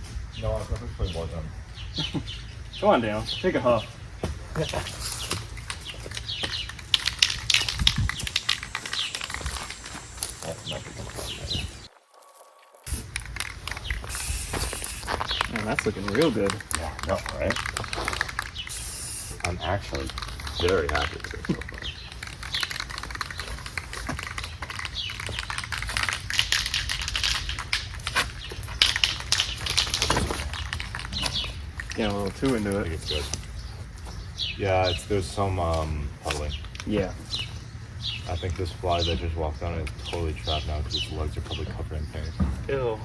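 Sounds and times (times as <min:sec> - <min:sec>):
birds chirping: 0:00.0 - 0:43.0
scattered clicks: 0:04.6 - 0:11.9, 0:12.8 - 0:33.6
spray-paint can hissing: 0:12.9 - 0:16.2, 0:17.8 - 0:20.5.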